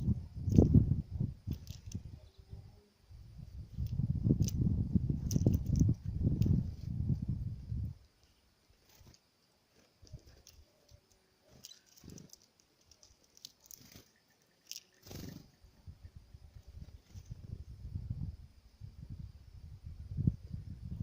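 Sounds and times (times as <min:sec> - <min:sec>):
birds pecking at a feeder: 0:01.4 - 0:02.4, 0:03.6 - 0:06.8, 0:08.1 - 0:15.6.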